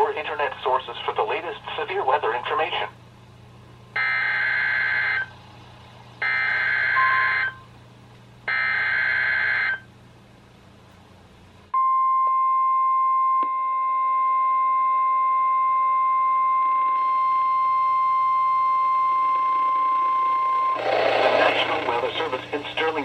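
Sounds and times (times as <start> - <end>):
steady warning alarm tone: 4.0 - 5.3, 6.2 - 7.6, 8.5 - 9.8, 16.9 - 22.5
warbling two-tone data screech: 20.8 - 22.4.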